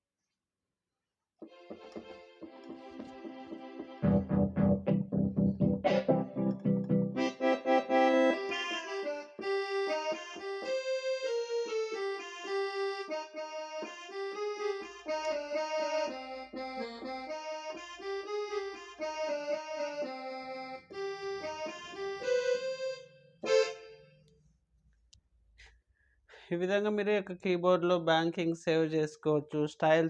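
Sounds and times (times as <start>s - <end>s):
electronic keyboard melody: 1.4s - 24.3s.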